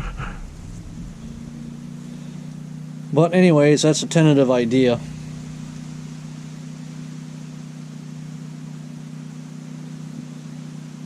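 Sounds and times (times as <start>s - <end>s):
even hiss: 0.0s - 8.6s
mechanical hum: 0.0s - 11.0s.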